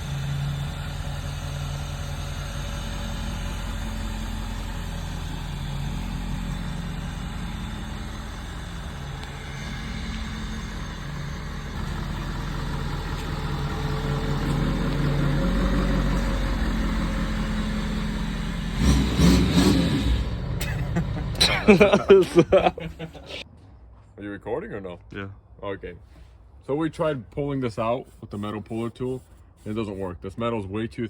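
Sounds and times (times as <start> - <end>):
pickup truck engine running: 0.0 - 23.4.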